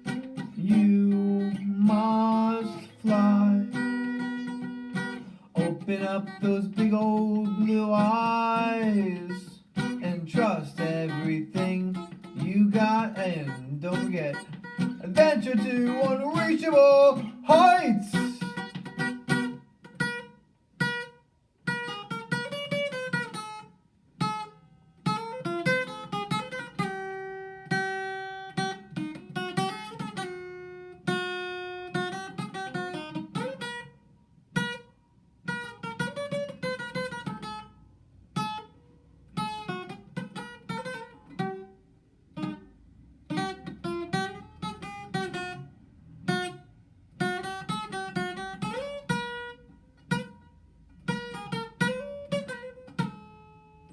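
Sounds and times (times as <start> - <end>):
acoustic guitar playing: 0.0 - 53.9.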